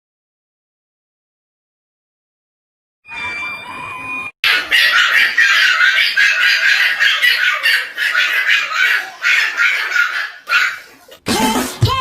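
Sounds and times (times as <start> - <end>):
bird squawking and screeching: 4.4 - 10.9.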